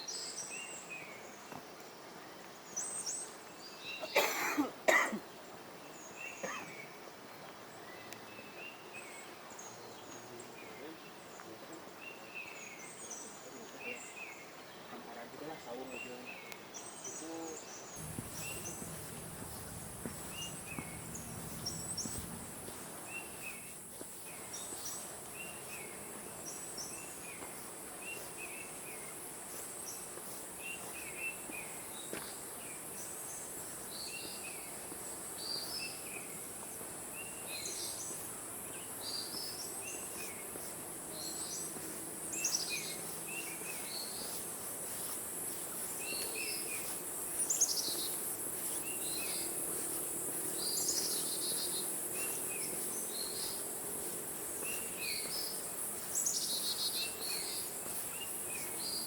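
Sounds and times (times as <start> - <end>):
birds chirping: 18.0 - 25.5.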